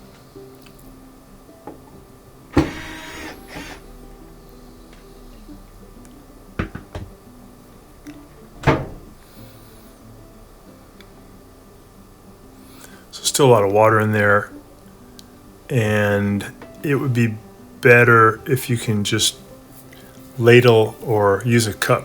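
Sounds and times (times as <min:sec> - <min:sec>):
cordless screwdriver motor whirring: 0:02.6 - 0:03.8.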